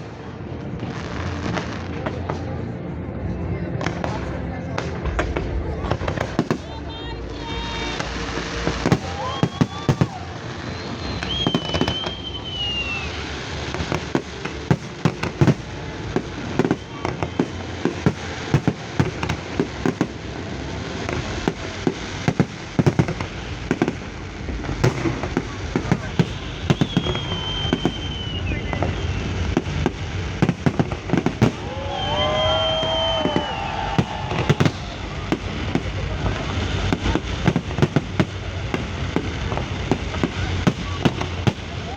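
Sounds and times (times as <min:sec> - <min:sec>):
fireworks bangs and crackles: 0:00.0 - 0:02.7, 0:03.8 - 0:41.9
firework whistles gliding downward: 0:07.8 - 0:19.2, 0:25.8 - 0:41.9.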